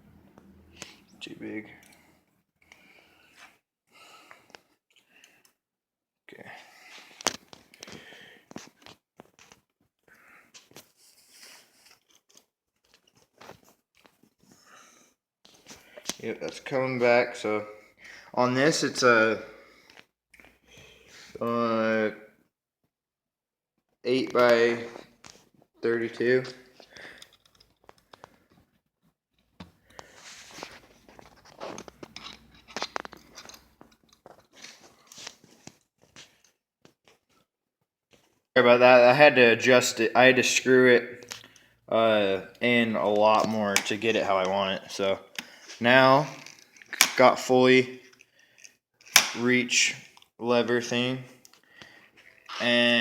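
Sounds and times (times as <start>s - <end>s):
small tools clicking and scraping: 10.6s - 14.3s, 26.8s - 28.5s, 29.8s - 37.2s, 45.3s - 47.2s, 48.0s - 50.4s, 51.4s - 52.7s
hand tools clicking and scraping: 29.9s - 35.6s, 42.6s - 47.4s, 48.0s - 50.4s.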